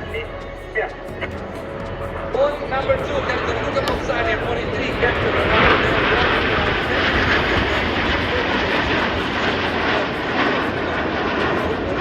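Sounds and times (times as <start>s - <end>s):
jet engines roaring: 0.0s - 12.0s.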